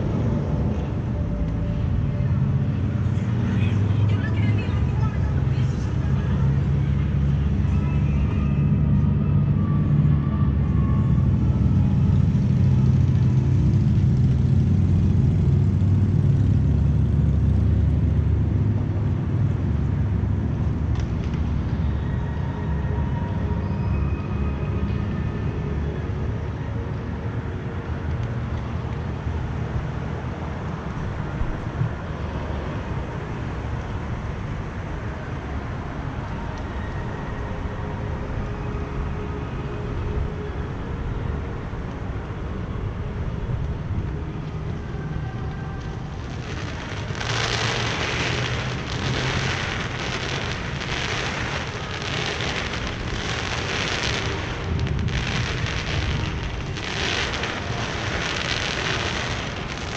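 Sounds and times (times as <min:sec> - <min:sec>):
crackling hissing firework bursts: 0:46.3 - 0:59.9
fireworks booming: 0:46.3 - 0:59.9.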